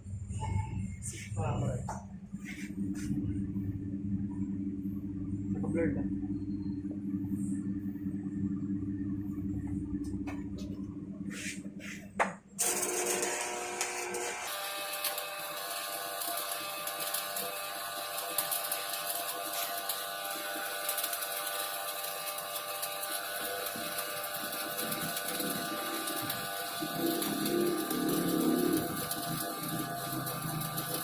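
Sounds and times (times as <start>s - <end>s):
welding arc crackling buzz: 12.6s - 31.0s.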